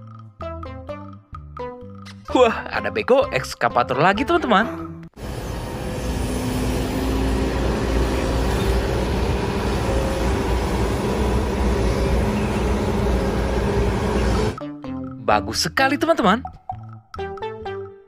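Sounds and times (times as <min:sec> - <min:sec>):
heavy vehicle engine humming: 0:05.2 - 0:14.6.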